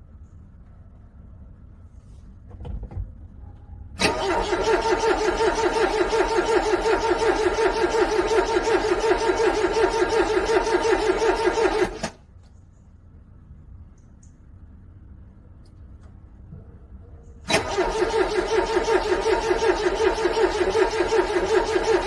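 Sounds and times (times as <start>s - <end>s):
car starter cranking: 4.0s - 12.2s, 17.4s - 22.0s.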